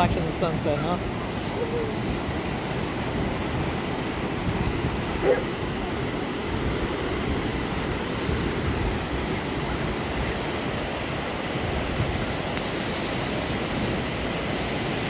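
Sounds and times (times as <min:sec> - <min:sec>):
ocean surf washing onto beach: 0:00.0 - 0:15.0.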